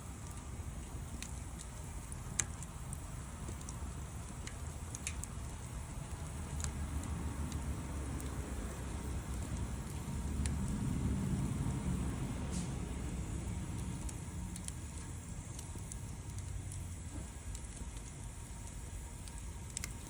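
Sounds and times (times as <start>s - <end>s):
wood fire crackling and popping: 0.0s - 20.0s
low rumble: 2.8s - 18.6s.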